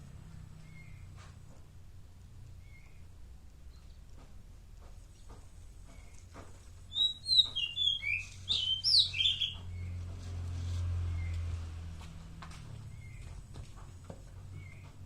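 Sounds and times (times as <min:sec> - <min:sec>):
low steady hum: 0:00.0 - 0:07.6
songbird chirping: 0:00.0 - 0:15.0.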